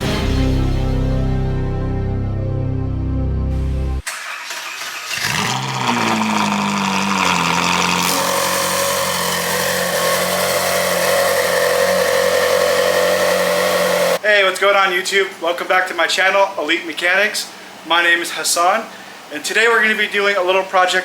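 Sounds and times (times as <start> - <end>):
car engine starting and idling: 3.6 - 14.2.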